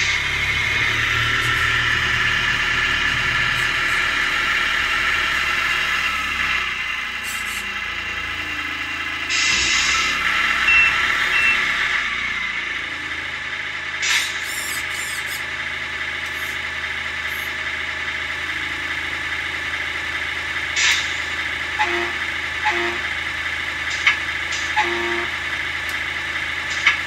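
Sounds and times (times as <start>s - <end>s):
truck engine idling through speaker: 0.0s - 27.0s
air-brake hisses: 7.1s - 8.4s, 14.0s - 15.5s, 16.2s - 16.6s, 17.2s - 17.6s, 20.8s - 21.2s.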